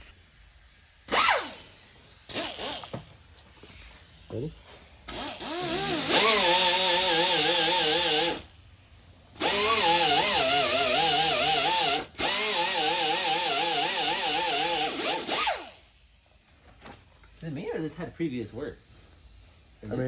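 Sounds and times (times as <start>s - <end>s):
power grinder on metal panel: 5.1s - 8.4s, 9.4s - 15.6s.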